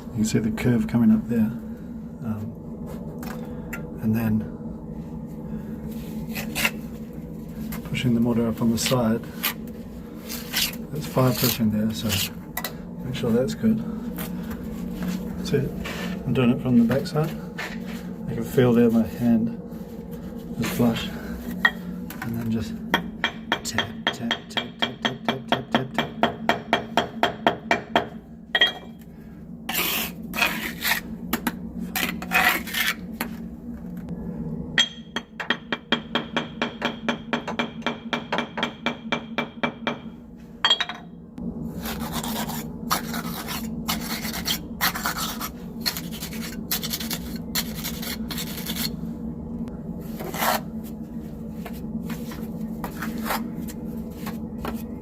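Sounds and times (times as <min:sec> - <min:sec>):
trowel scraping mortar on brick: 0:06.3 - 0:06.8, 0:10.2 - 0:12.4, 0:29.7 - 0:31.1, 0:31.8 - 0:33.3, 0:41.8 - 0:49.0, 0:50.2 - 0:50.7.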